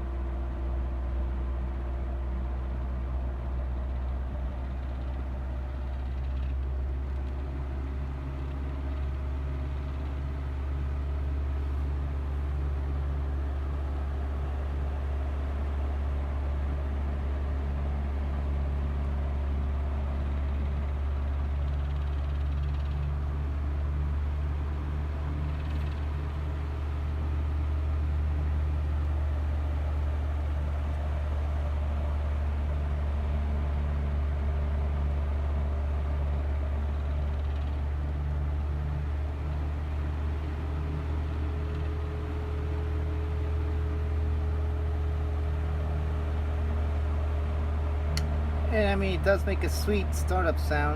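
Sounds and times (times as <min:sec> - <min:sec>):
fan air rushing: 0:00.0 - 0:50.9
table fan motor humming: 0:00.0 - 0:50.9.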